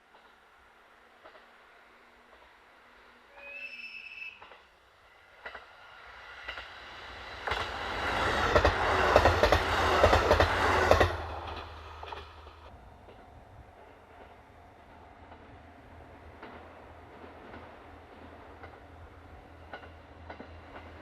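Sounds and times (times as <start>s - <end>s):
diesel railcar rumble: 4.4s - 21.0s
wheels clacking over rail joints: 5.4s - 14.4s, 16.3s - 21.0s.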